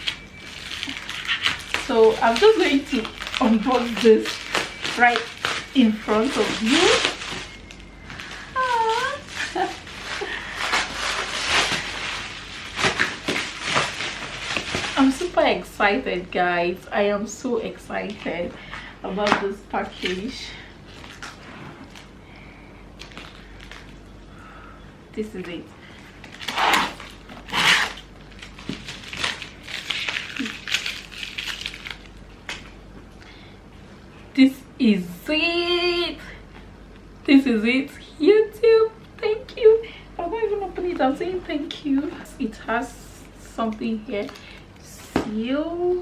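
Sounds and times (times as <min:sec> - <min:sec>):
package tearing: 0:00.0 - 0:15.0, 0:26.2 - 0:32.6
wrapping crinkling and rustling: 0:00.0 - 0:16.8, 0:17.6 - 0:24.3, 0:25.3 - 0:32.9, 0:40.6 - 0:45.1
package rustling and knocking: 0:28.3 - 0:30.3.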